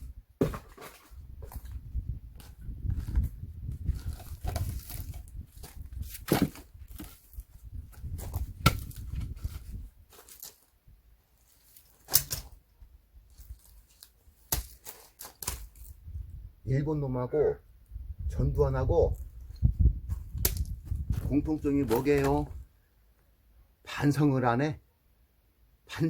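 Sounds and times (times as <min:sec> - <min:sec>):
wood knocking and rustling: 0:00.0 - 0:10.5, 0:20.1 - 0:22.6
axe splitting firewood: 0:00.1 - 0:07.3, 0:08.0 - 0:10.5, 0:12.0 - 0:12.6, 0:14.0 - 0:15.9, 0:21.8 - 0:22.5.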